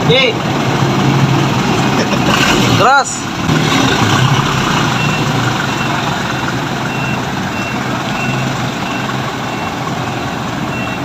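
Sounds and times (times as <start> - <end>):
vehicle engine running: 0.4 - 11.0
reversing beeper: 3.6 - 11.0.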